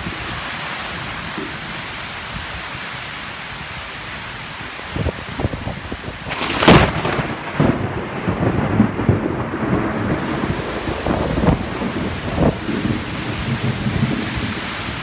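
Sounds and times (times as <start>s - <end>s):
heavy rain hissing: 0.0s - 15.0s
thunder rumbling: 5.0s - 15.0s
loud thunderclap: 5.4s - 15.0s.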